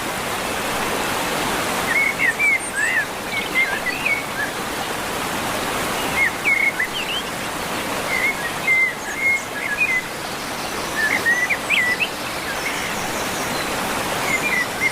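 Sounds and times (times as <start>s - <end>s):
waterfall rushing: 0.0s - 14.9s.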